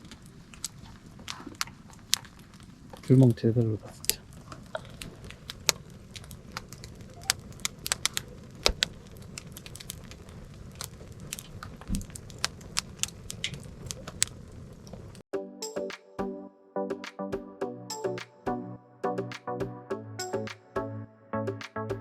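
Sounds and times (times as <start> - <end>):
low rush of flame: 0.0 - 15.2
campfire crackling and popping: 0.0 - 15.3.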